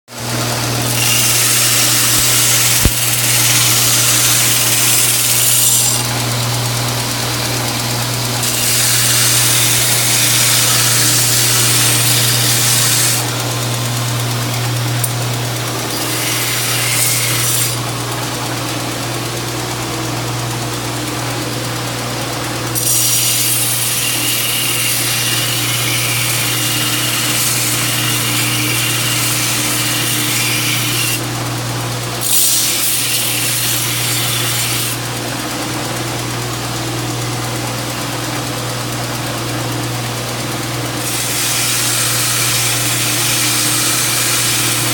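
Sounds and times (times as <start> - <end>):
electric motor humming: 0.2 - 44.9
grinding rasping hiss: 0.8 - 19.0.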